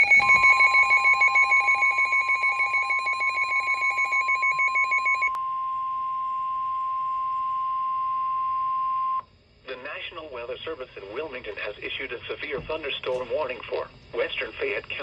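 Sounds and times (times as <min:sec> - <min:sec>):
rapid pulsing beep: 0:00.0 - 0:05.4
steady high-pitched alarm tone: 0:00.0 - 0:05.4.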